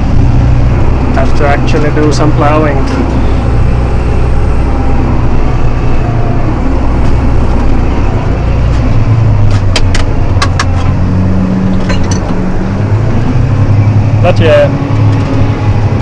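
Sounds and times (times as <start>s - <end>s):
tractor diesel engine running: 0.0s - 16.0s.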